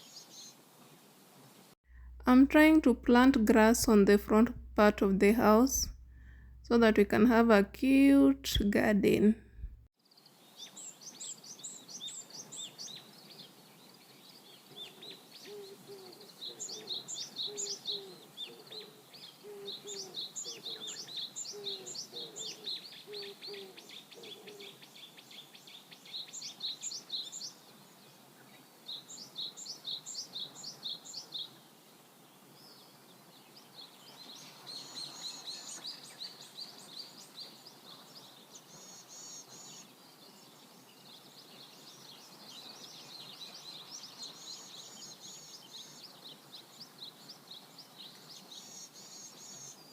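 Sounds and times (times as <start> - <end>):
birds chirping: 1.9 - 9.8.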